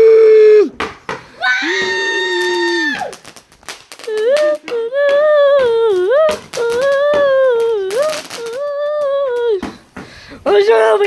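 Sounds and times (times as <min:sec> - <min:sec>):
sharp cracks: 0:00.6 - 0:10.4.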